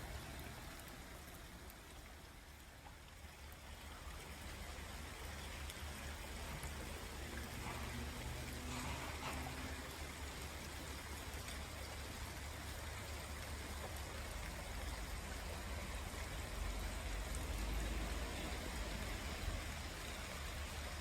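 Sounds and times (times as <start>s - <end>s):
raindrop ticks: 0.0s - 20.4s
rain hissing: 3.6s - 21.0s.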